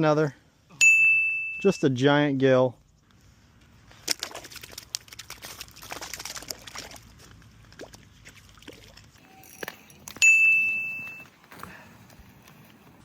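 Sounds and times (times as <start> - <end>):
water splashing and dripping: 4.0 - 9.2.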